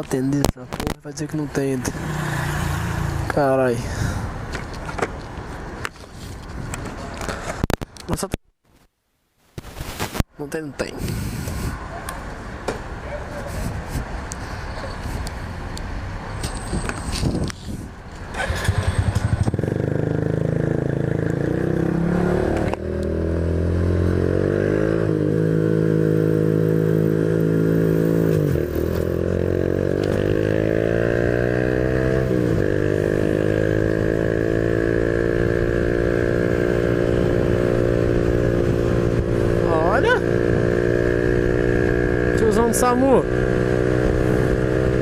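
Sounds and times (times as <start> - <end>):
motorcycle engine accelerating: 1.8 - 3.4, 18.3 - 45.0.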